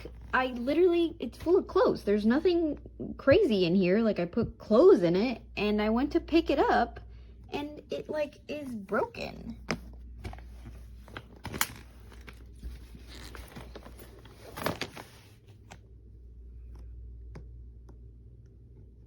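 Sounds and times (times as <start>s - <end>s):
crinkling and rustling: 8.7s - 16.0s
suitcase clicks and knocks: 11.2s - 15.1s.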